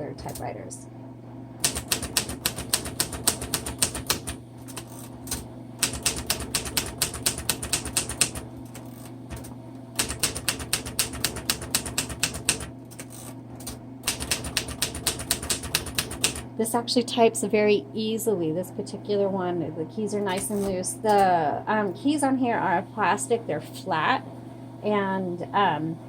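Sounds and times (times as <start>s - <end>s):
manual typewriter typing: 1.6s - 16.5s, 20.4s - 21.2s.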